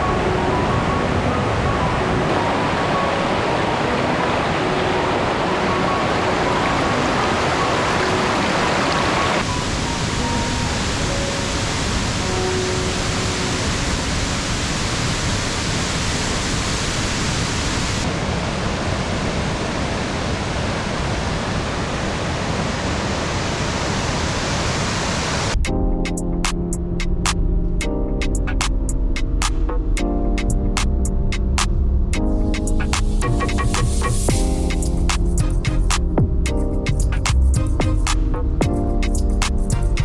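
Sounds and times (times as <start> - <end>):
waterfall rushing: 0.0 - 25.6.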